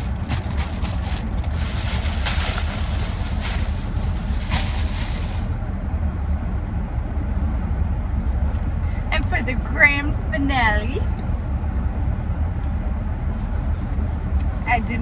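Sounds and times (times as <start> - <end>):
shopping bags rustling: 0.0 - 5.6
steady low rumble: 0.0 - 15.0.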